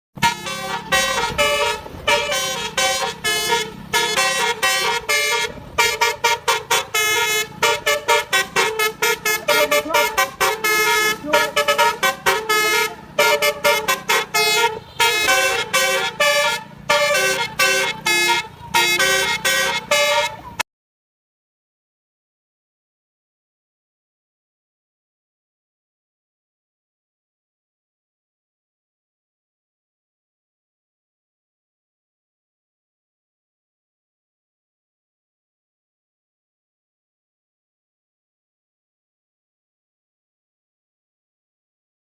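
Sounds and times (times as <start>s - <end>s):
multi-tone bus horn melody: 0.2s - 20.6s.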